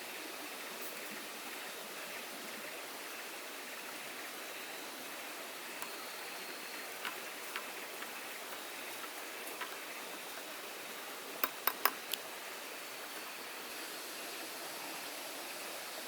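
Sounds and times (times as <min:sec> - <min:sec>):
steady rain hiss: 0:00.0 - 0:16.0
sharp ticks: 0:11.4 - 0:12.2.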